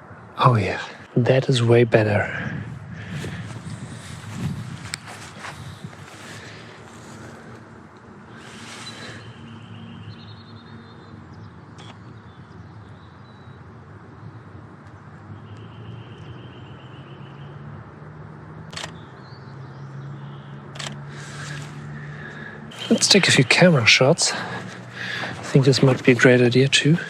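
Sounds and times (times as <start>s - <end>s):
camera shutter clicks: 18.7s - 19.0s, 20.8s - 21.7s.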